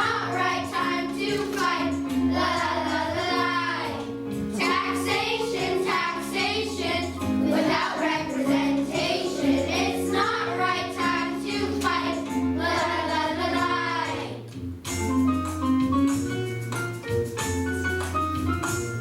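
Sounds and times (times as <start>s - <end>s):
children singing: 0.0s - 14.5s
instrumental backing: 0.0s - 19.0s.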